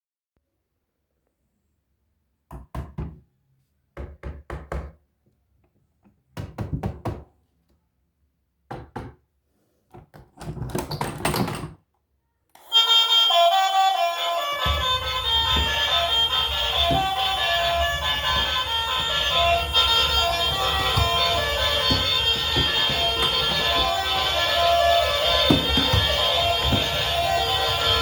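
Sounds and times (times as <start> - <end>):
instrumental music: 12.6 - 28.0
hard knocks and clacks: 14.6 - 28.0
rattling clatter: 14.7 - 28.0.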